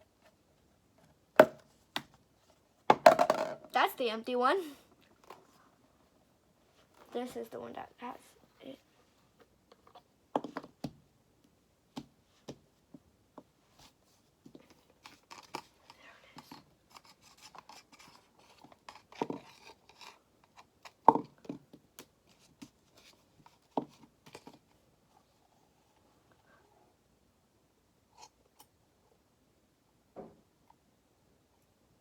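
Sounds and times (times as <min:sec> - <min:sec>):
bottles knocking on a table: 0:02.9 - 0:03.7.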